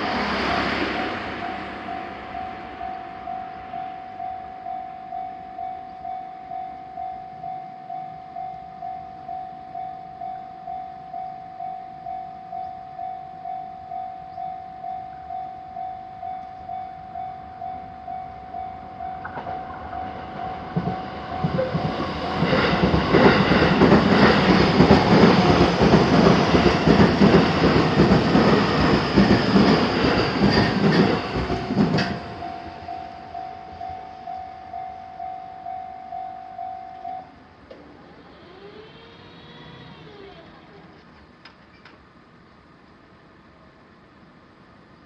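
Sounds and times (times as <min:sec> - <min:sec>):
level crossing warning bell: 0:00.0 - 0:37.6
train wheels clacking over rails: 0:19.2 - 0:33.1.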